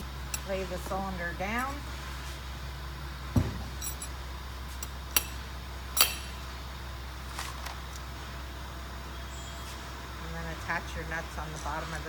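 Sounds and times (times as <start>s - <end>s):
thump on workbench: 3.3s - 3.7s
metal parts clinking: 3.8s - 4.2s.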